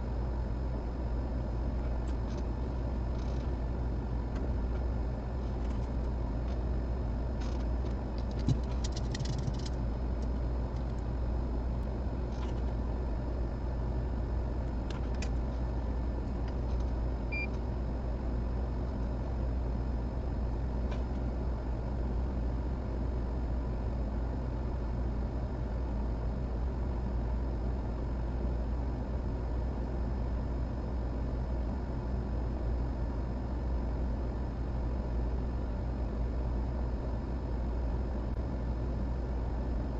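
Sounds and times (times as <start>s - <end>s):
fan humming: 0.0s - 26.2s.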